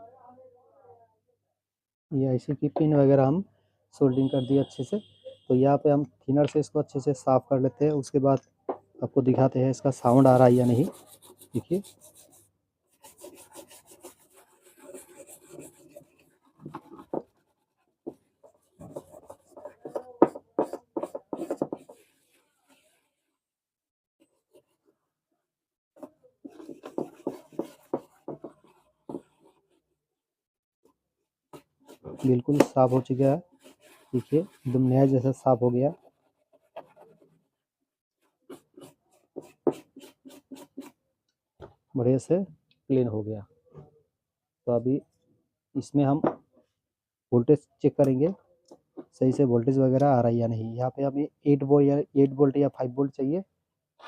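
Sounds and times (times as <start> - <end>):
brush scrubbing circuit board: 10.0 - 23.3, 31.6 - 37.5, 38.5 - 41.0.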